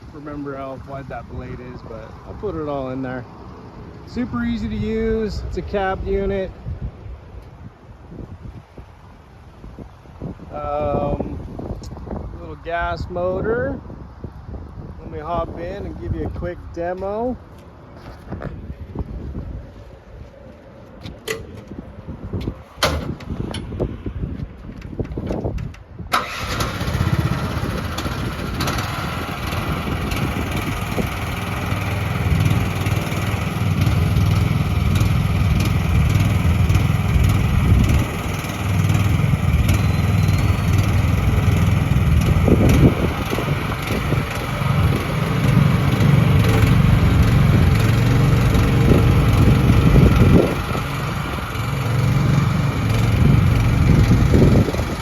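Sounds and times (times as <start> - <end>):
mini excavator engine running: 26.2 - 55.0.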